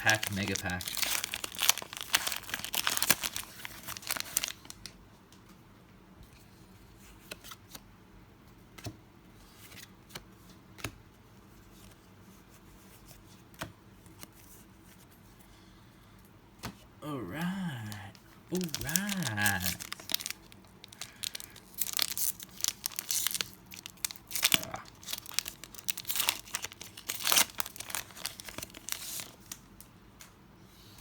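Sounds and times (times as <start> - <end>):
cards and packs rustling: 0.0 - 4.7, 17.5 - 29.6
foil wrappers crinkling and tearing: 0.0 - 4.8, 18.5 - 29.6.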